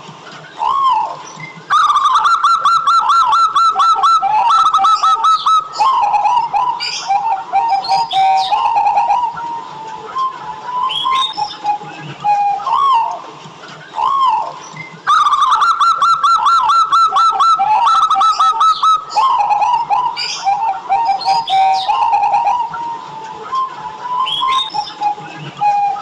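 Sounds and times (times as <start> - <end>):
high bird chirps: 0.5 - 9.6, 13.9 - 23.0, 24.2 - 25.3
dove cooing: 0.6 - 13.2, 13.9 - 26.0.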